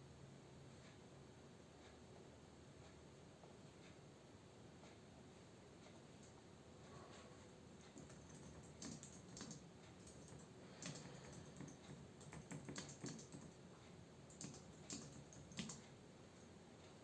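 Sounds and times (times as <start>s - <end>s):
typing on computer keyboard: 7.7s - 16.0s.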